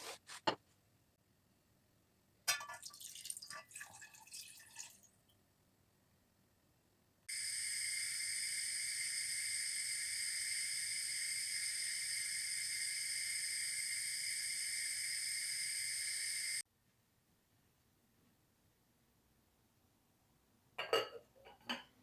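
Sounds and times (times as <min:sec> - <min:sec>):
steady high hiss: 0:07.3 - 0:16.6.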